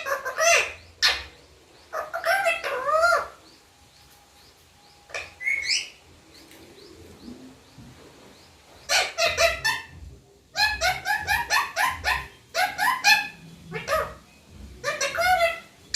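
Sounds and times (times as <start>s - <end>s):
parrot calling: 0.0s - 3.6s, 5.0s - 6.0s, 8.8s - 15.9s.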